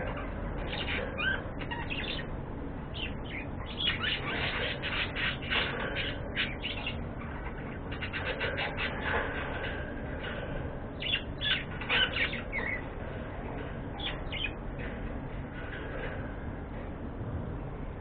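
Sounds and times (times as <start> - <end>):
budgerigars chirping and squawking: 0.0 - 2.3, 3.0 - 14.9.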